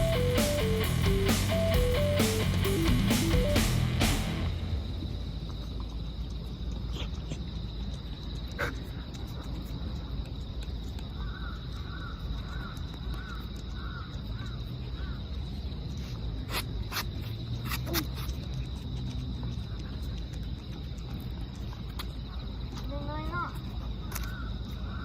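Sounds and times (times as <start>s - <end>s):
thin high whine: 0.0s - 5.8s
low outdoor rumble: 0.0s - 7.2s.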